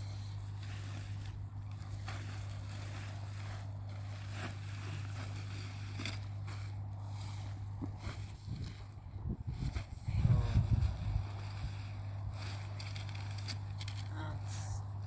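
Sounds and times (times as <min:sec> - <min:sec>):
tent sack rustling: 0:00.0 - 0:14.1
low rumble: 0:06.6 - 0:15.0.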